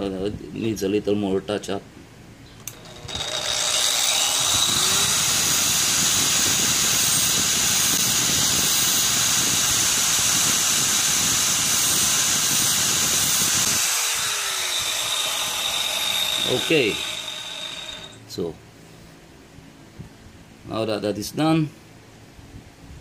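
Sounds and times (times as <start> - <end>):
angle grinder running: 2.7 - 18.2
drill bit grinding on disc: 2.7 - 18.2.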